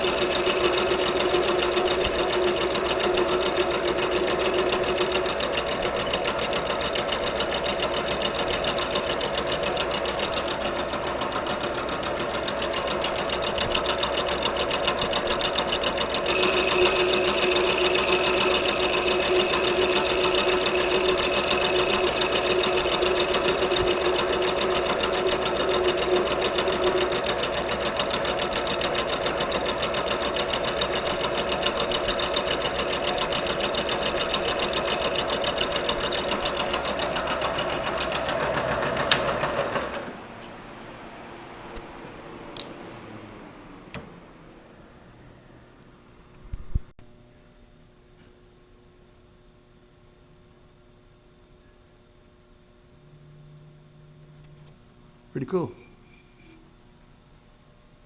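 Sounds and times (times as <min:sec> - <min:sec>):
milling machine spindle humming: 0:00.0 - 0:14.2, 0:15.0 - 0:39.0.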